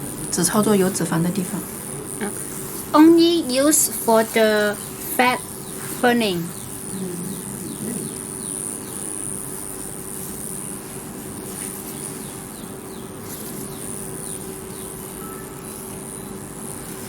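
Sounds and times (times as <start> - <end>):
device hum: 0.0 - 17.0
high-pitched whine: 12.2 - 17.0.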